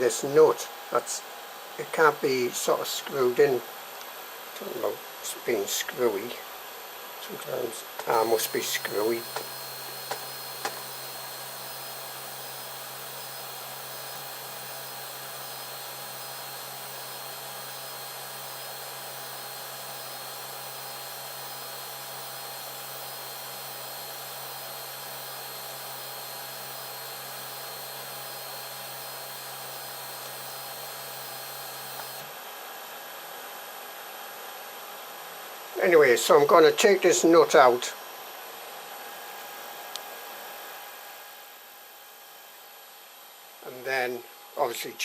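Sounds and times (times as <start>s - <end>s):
low electrical hum: 0.0s - 11.7s
cooling fans whirring: 0.0s - 12.3s.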